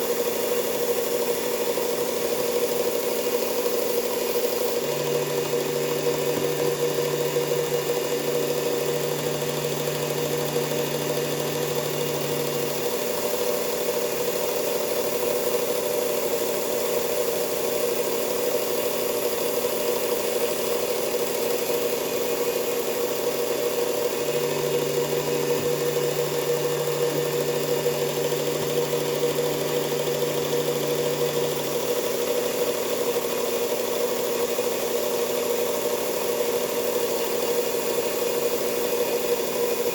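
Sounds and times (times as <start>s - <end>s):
belt grinder motor running: 0.0s - 39.9s.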